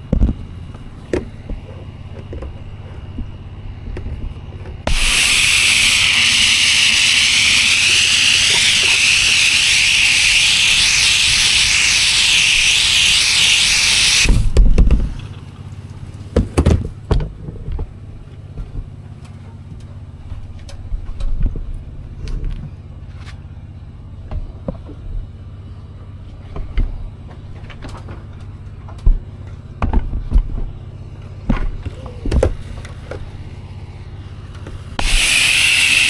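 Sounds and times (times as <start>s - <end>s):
engine running: 0.0s - 36.0s
pressure washer spraying: 4.9s - 14.6s, 35.0s - 36.0s
knocks and thumps: 16.4s - 17.9s.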